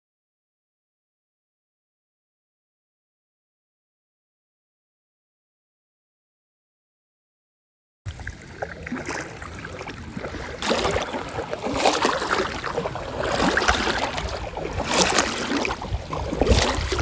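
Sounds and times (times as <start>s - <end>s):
water noise: 8.1s - 17.0s
wind buffeting microphone: 8.1s - 17.0s.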